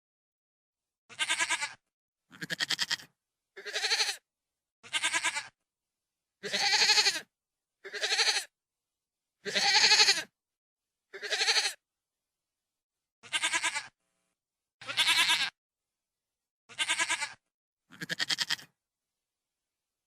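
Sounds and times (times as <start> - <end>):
goat bleating: 1.1 - 4.2, 4.8 - 5.6, 6.4 - 8.5, 9.4 - 10.3, 11.1 - 11.8, 13.2 - 14.0, 14.8 - 15.6, 16.7 - 18.7.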